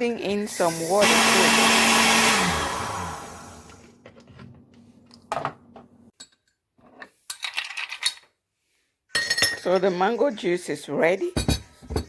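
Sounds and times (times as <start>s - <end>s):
blender motor running down: 0.5s - 3.9s
kitchenware knocks and clinks: 5.3s - 6.5s, 9.1s - 9.9s, 11.3s - 12.0s.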